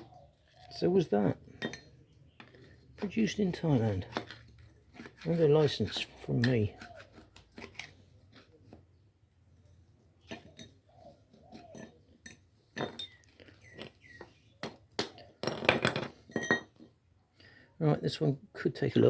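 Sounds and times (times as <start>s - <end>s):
metal parts clinking together: 11.7s - 14.0s.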